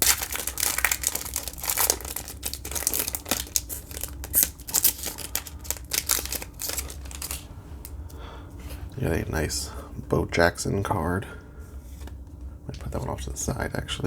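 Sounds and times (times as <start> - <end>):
plastic wrapper crinkling and tearing: 0.0 - 8.0.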